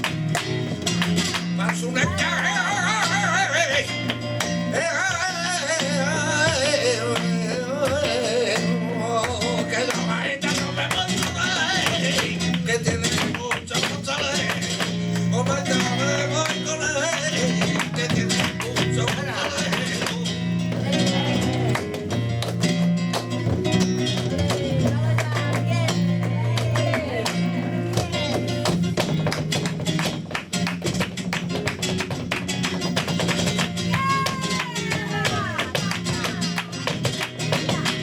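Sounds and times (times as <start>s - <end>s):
flamenco guitar: 0.0s - 38.0s
person singing: 1.6s - 4.0s, 15.3s - 21.9s, 24.0s - 28.6s, 33.9s - 38.0s.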